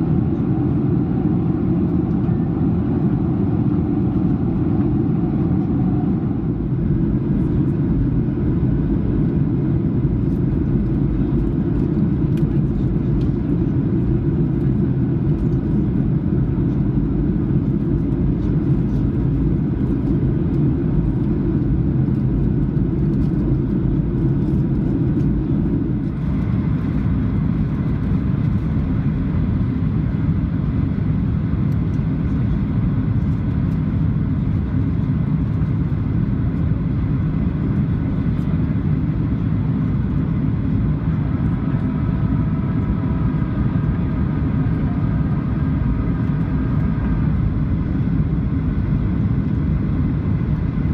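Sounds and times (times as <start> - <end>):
airplane cabin rumble: 0.0 - 50.9.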